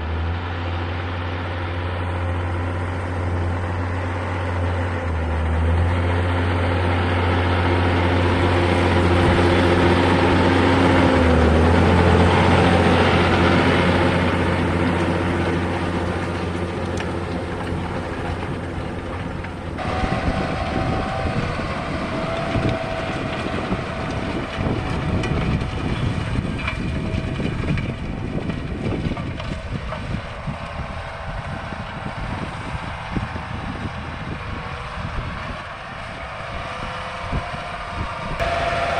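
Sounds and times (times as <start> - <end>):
tractor engine running: 0.0 - 38.9
wind buffeting microphone: 7.9 - 38.9.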